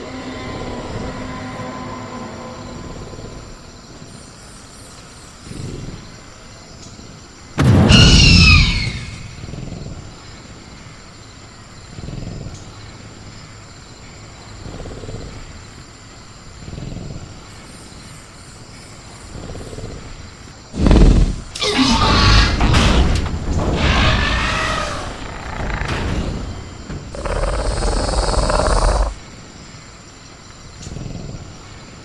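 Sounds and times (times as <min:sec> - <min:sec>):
cricket chirr: 0:00.0 - 0:32.0
creature shriek: 0:07.8 - 0:09.4, 0:20.8 - 0:23.0, 0:23.7 - 0:26.2, 0:27.1 - 0:29.2
creature grunts: 0:20.8 - 0:22.6, 0:27.1 - 0:29.2.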